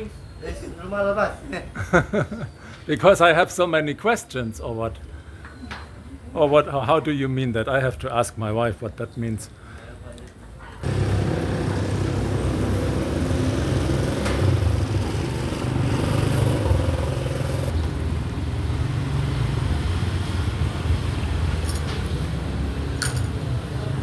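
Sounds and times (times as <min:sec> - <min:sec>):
engine humming: 0:10.8 - 0:22.5.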